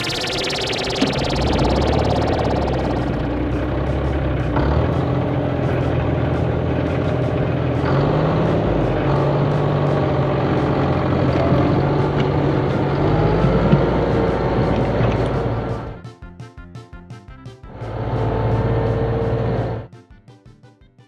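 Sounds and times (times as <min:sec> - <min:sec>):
heavy vehicle engine running: 0:00.0 - 0:15.9.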